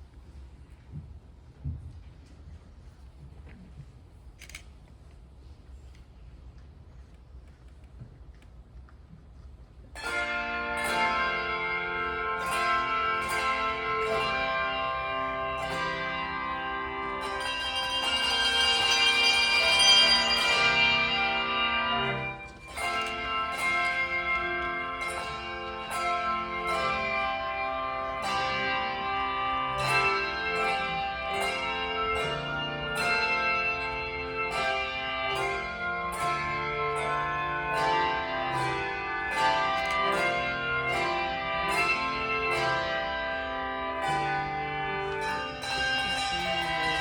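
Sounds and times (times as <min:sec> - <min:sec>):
handbells playing a tune: 0:10.0 - 0:47.0.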